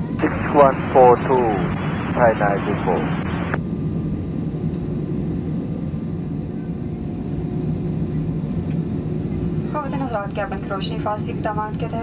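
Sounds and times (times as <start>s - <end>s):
low hum of airplane cabin: 0.0s - 12.0s
radio static hiss: 0.2s - 3.6s.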